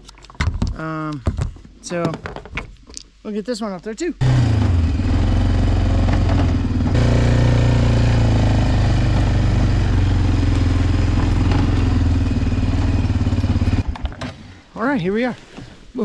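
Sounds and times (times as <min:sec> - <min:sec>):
vehicle engine running: 0:04.2 - 0:14.1.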